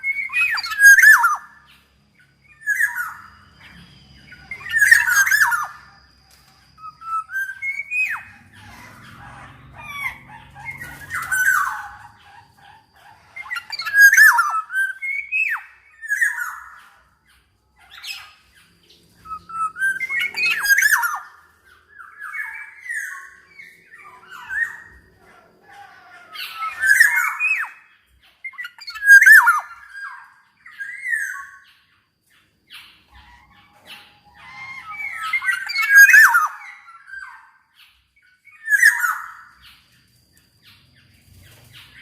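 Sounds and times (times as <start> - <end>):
bird whistling song: 0.0 - 42.0
bird rasping calls: 7.1 - 17.0.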